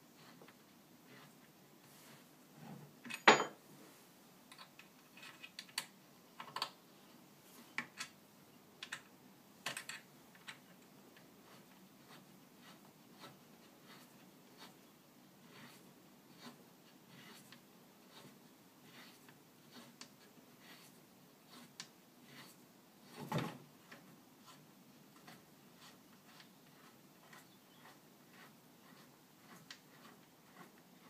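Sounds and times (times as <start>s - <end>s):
wooden parts clicking and knocking: 4.5s - 6.8s, 8.8s - 10.7s.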